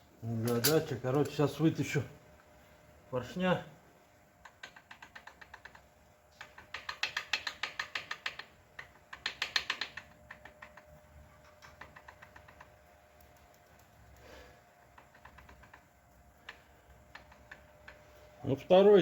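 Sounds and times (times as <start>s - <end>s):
ratchet wrench clicking: 4.4s - 10.8s.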